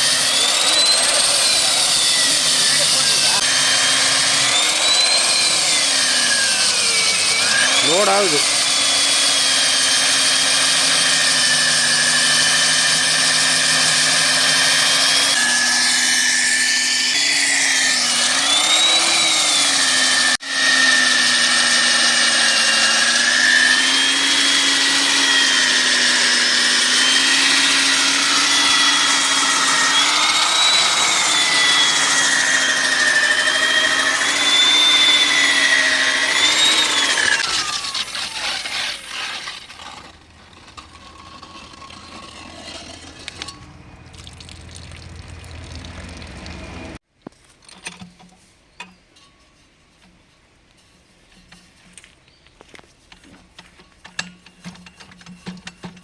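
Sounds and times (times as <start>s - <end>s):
core drill cutting concrete: 0.0s - 43.6s.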